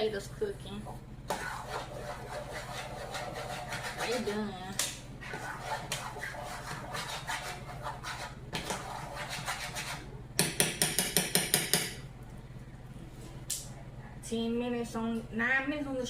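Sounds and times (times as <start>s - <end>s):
sharp knocks of metal on pot: 10.4s - 12.0s.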